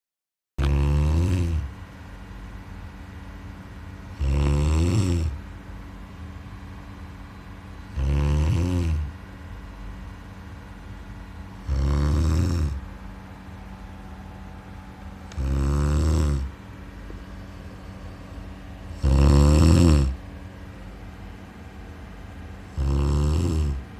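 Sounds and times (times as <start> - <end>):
person snoring: 0.6 - 1.7, 4.2 - 5.4, 7.9 - 9.1, 11.6 - 12.8, 15.3 - 16.5, 18.9 - 20.2, 22.7 - 23.8.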